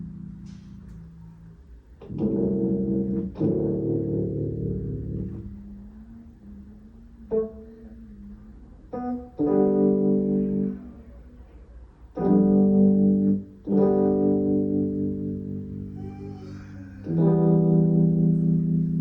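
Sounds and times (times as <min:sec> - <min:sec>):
keyboard chords: 0:00.0 - 0:11.4, 0:12.2 - 0:19.0
guitar chords: 0:17.0 - 0:19.0.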